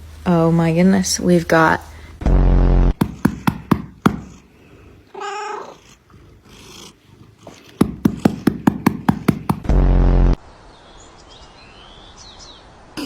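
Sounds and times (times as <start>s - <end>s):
cat meowing: 5.1s - 6.0s.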